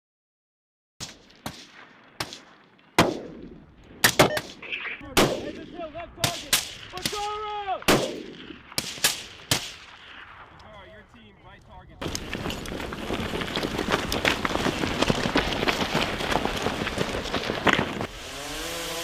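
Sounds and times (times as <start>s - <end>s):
gunshots with echo: 1.0s - 10.4s.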